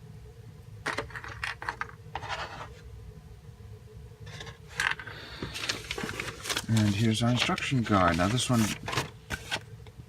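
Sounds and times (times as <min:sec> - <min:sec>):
plastic parts rubbing and scraping: 0:00.9 - 0:02.8, 0:04.3 - 0:09.6.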